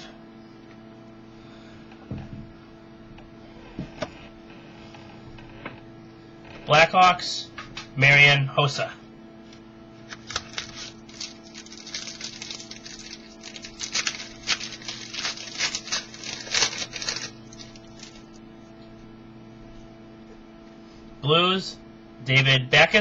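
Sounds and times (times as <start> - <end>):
steady low hum: 0.0 - 23.0
cards shuffling clicks and rustles: 10.0 - 18.4.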